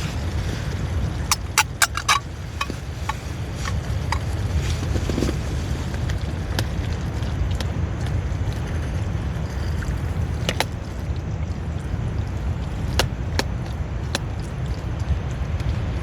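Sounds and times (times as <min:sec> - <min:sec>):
wind buffeting tent: 0:00.0 - 0:16.0
sharp ticks: 0:01.3 - 0:04.2.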